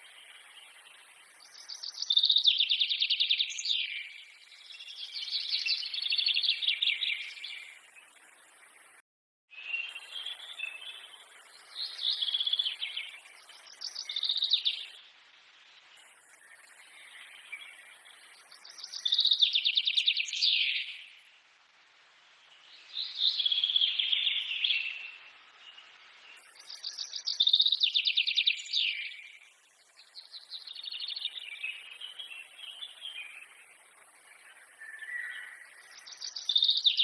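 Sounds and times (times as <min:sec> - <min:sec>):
forest ambience: 0:00.0 - 0:37.0
songbird trilling: 0:34.8 - 0:37.0.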